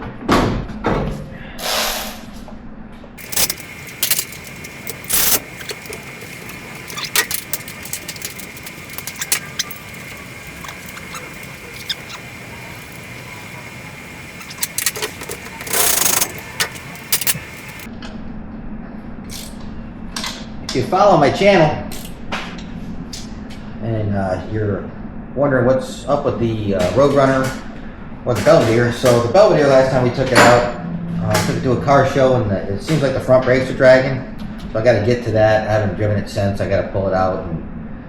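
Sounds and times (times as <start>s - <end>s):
steady hiss: 3.2s - 17.9s
thin high whine: 3.2s - 17.9s.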